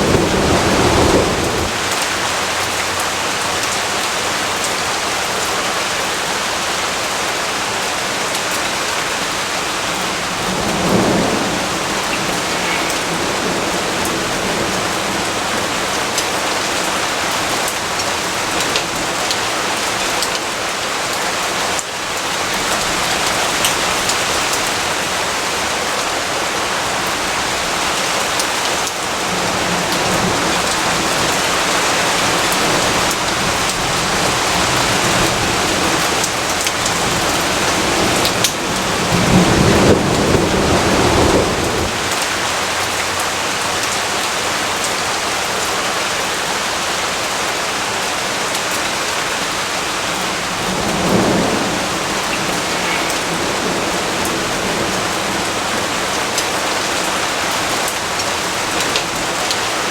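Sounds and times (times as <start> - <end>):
low rumbles of thunder: 0.0 - 2.8, 9.5 - 16.7, 28.8 - 42.9, 50.2 - 56.9
steady rain pouring: 0.0 - 59.9.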